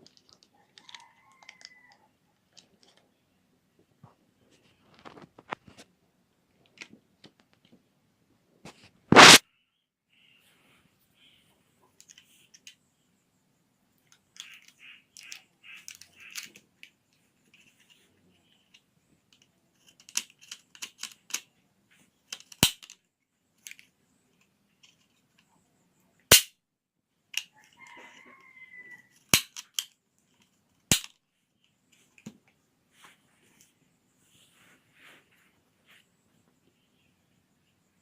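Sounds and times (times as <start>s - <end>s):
plastic clicks and snaps: 18.7s - 21.5s, 22.3s - 23.0s, 29.3s - 31.2s.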